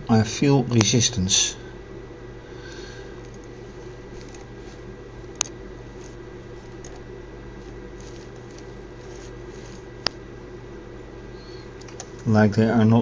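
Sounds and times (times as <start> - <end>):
steady low hum: 0.0 - 13.0
plastic parts handled: 4.1 - 4.8, 5.4 - 10.2.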